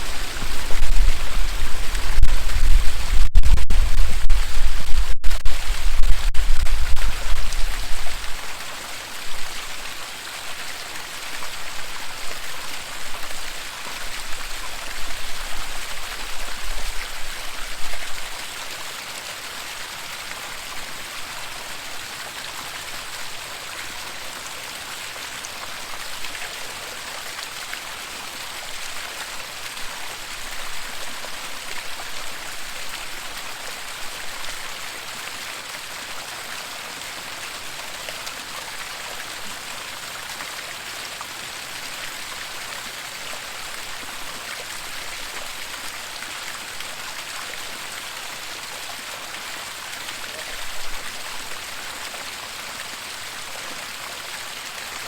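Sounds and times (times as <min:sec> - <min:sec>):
low rumble: 0:00.0 - 0:08.2
waterfall rushing: 0:00.0 - 0:26.3.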